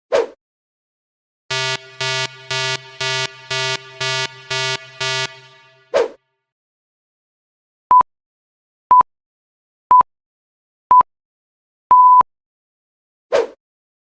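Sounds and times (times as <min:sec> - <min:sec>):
electronic countdown beeps: 0:01.5 - 0:06.0.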